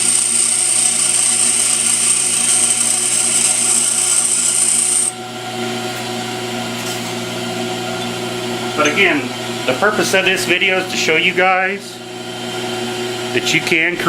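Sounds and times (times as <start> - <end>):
tool bit grinding hiss: 0.0 - 5.1
grinder motor hum: 0.0 - 12.0.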